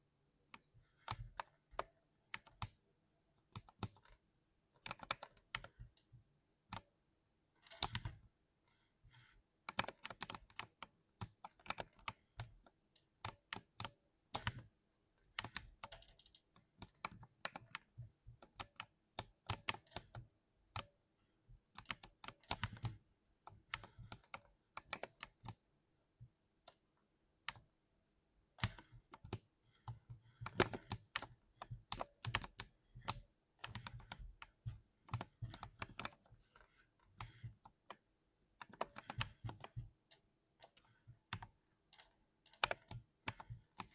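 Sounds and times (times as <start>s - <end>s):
mechanical keyboard typing: 4.8s - 6.1s, 9.7s - 12.2s, 15.3s - 20.9s, 21.8s - 23.0s, 28.6s - 43.9s.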